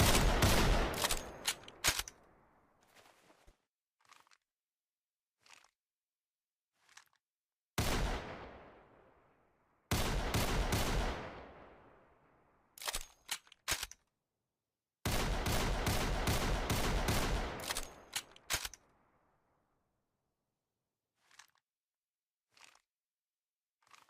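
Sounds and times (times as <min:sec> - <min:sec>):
sharp mechanical clicks: 0:00.0 - 0:02.2, 0:12.8 - 0:14.1, 0:17.6 - 0:18.8.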